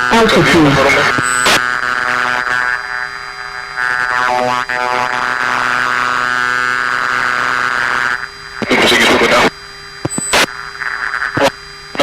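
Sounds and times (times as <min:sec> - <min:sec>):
electronic intercom buzz: 0:00.0 - 0:12.0
sharp click: 0:10.0 - 0:10.5.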